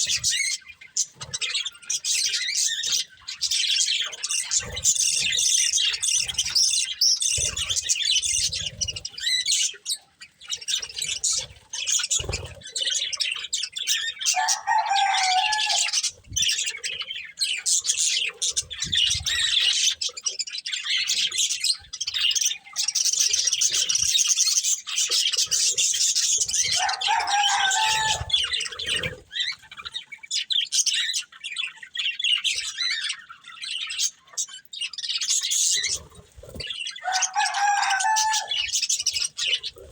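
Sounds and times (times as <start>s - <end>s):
budgerigars chattering and chirping: 0.0s - 39.9s
low long bird calls: 25.2s - 31.3s.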